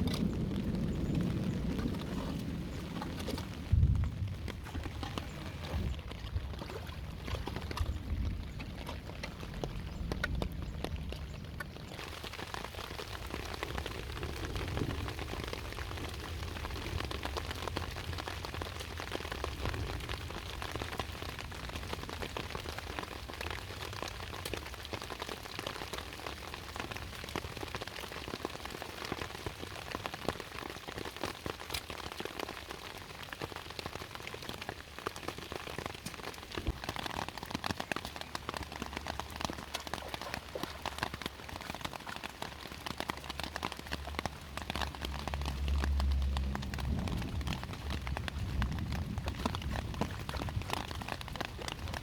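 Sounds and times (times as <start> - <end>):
low rumble: 0.0 - 12.0, 43.4 - 52.0
water drops pattering: 31.0 - 52.0.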